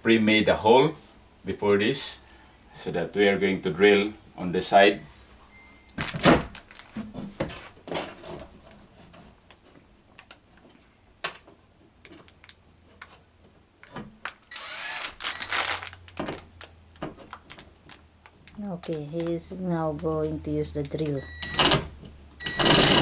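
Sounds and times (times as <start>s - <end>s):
power drill running: 14.5s - 16.0s, 22.4s - 23.0s
knocks and clicks of tools: 20.8s - 23.0s.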